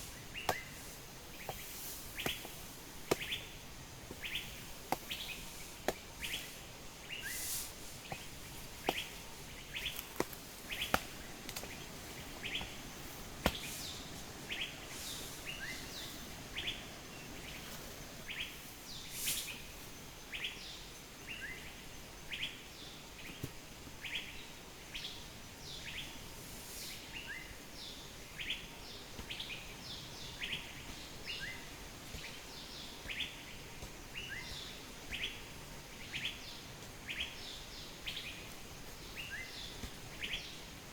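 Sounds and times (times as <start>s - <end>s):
bird chirping: 0.0s - 22.6s
steady background hiss: 0.0s - 40.9s.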